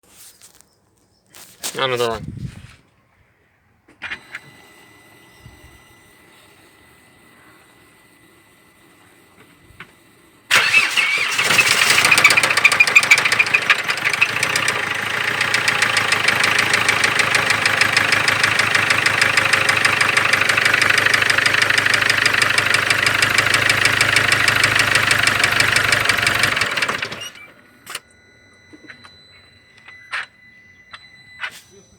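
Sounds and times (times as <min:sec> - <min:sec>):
diesel engine starting and idling: 0:10.1 - 0:30.2.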